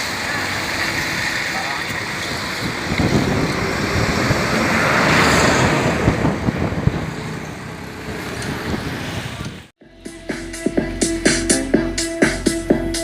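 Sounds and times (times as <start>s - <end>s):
street traffic: 0.0s - 13.0s
wind buffeting microphone: 0.4s - 9.7s.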